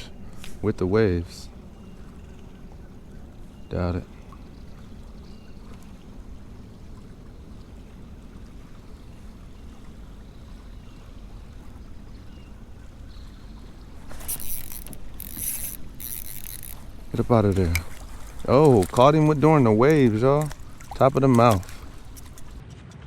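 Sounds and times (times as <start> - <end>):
choppy waves around a kayak: 0.0 - 22.6
wind: 0.0 - 23.0
fish splashing at the surface: 13.6 - 22.6.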